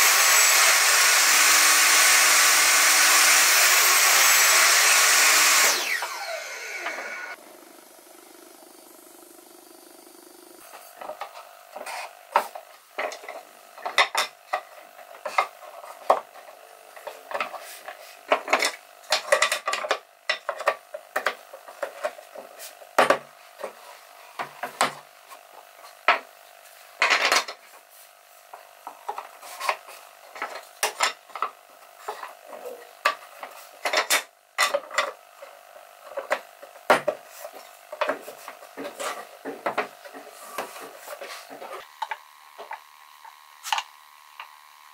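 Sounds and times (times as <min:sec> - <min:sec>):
scrape on wood: 0:10.6 - 0:12.6, 0:29.1 - 0:30.6, 0:37.2 - 0:41.9.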